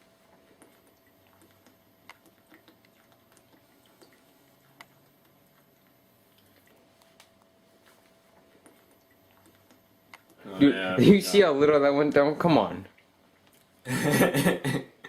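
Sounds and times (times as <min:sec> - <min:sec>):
person gulping and swallowing: 0:00.4 - 0:06.9.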